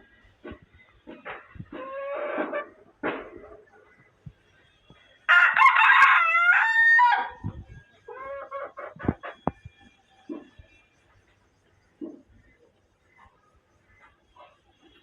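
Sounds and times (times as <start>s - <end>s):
chicken clucks: 0.4s - 4.0s, 7.4s - 10.7s, 11.3s - 15.0s
rooster crowing: 5.3s - 7.4s.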